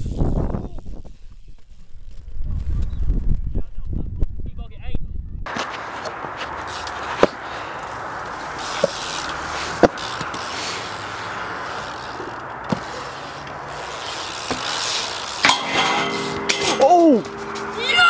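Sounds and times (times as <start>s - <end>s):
bike rushing over rough ground: 5.4s - 18.0s
bike knocks: 5.5s - 10.6s, 11.9s - 13.4s, 14.0s - 18.0s.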